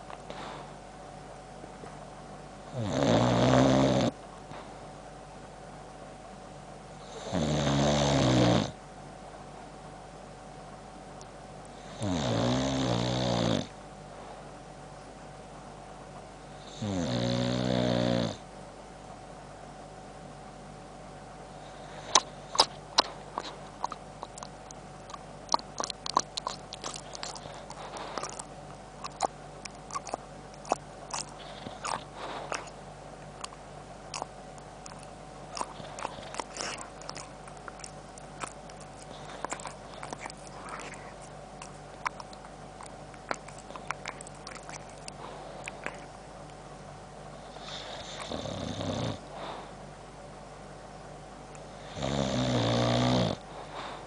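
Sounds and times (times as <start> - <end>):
dog jowls clicking and smacking: 22.6 - 32.7, 34.2 - 46.1.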